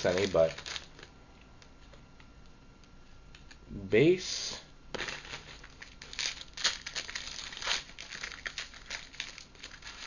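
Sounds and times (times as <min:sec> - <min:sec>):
cards and foil wrappers rustling: 0:00.0 - 0:01.1, 0:05.0 - 0:10.0.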